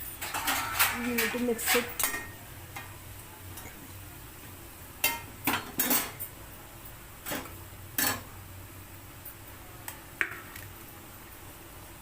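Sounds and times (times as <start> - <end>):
spoon scraping a cooking pan: 0.0 - 2.9.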